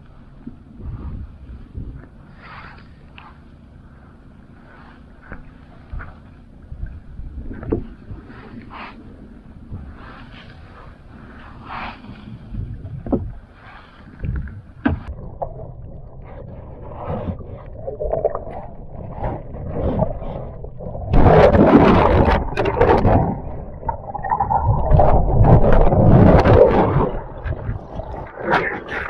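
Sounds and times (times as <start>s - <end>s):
knocks and rustling on kayak: 4.6s - 9.0s, 9.6s - 15.4s, 16.2s - 23.6s
water rushing and splashing: 9.9s - 29.0s.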